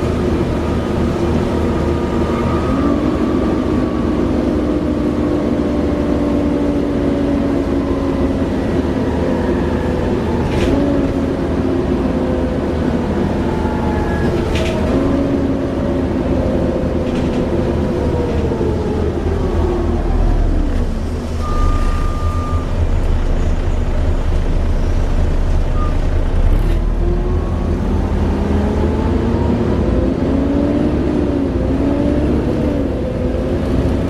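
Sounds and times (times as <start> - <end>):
diesel locomotive engine running: 0.0 - 34.0.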